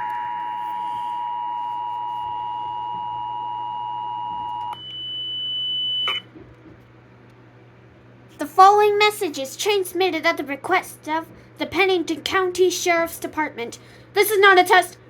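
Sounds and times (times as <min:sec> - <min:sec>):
two-tone alert signal: 0:04.2 - 0:06.2
click: 0:06.0 - 0:06.2.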